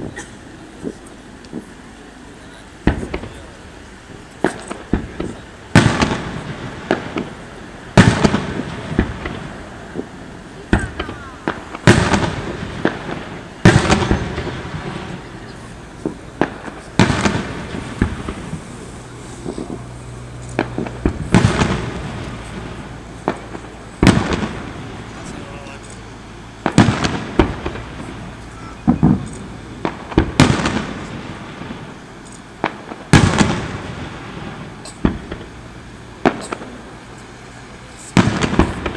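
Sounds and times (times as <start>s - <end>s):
fireworks exploding with crackle: 0.0s - 38.9s.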